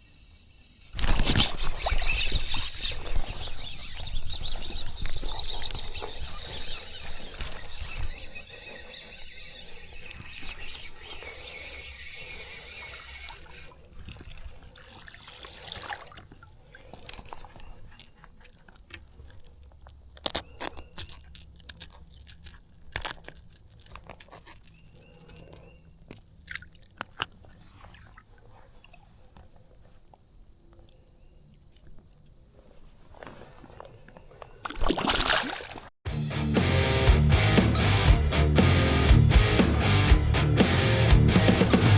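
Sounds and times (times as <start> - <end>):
insects buzzing: 0.0 - 41.2.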